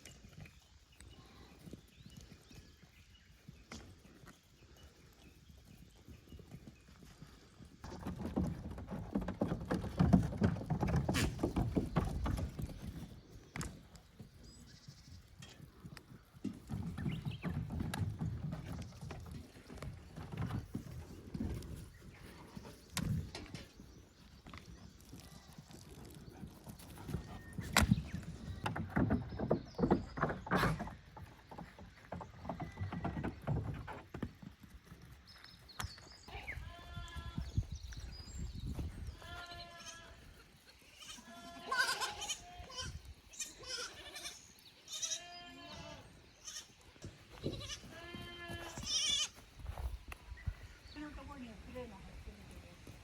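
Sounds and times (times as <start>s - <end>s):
hooves clattering on hard surface: 0.0s - 45.3s
goats bleating: 39.2s - 49.4s.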